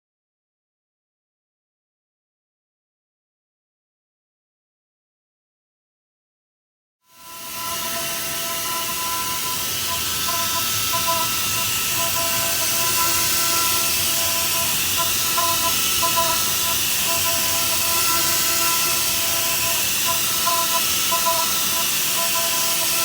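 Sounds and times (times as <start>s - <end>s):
high spindle tones: 7.2s - 23.0s
milling machine hiss: 7.2s - 23.0s.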